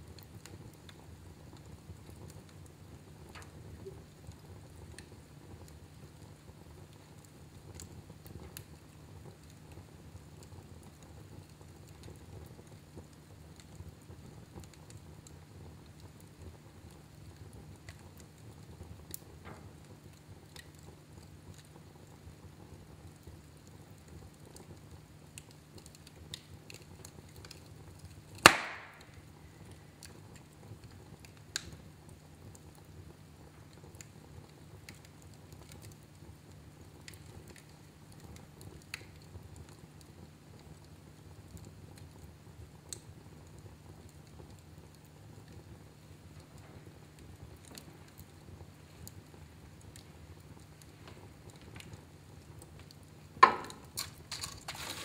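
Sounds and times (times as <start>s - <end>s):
wood fire crackling: 0.0s - 55.0s
sharp pop of fire: 28.4s - 29.2s, 53.4s - 55.0s.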